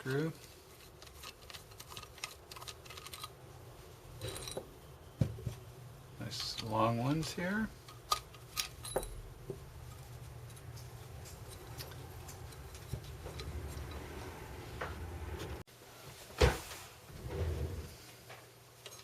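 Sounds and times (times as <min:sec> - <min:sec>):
screwdriver handling rumble: 0:00.7 - 0:03.4, 0:07.8 - 0:15.5.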